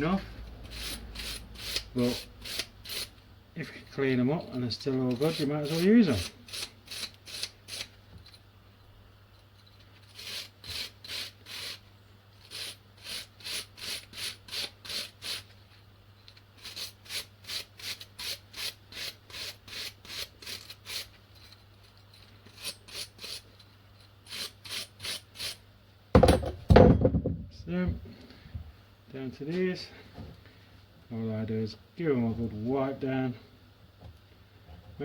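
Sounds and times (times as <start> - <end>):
wire brush scrubbing metal: 0.0 - 3.1, 4.0 - 7.9, 10.0 - 11.8.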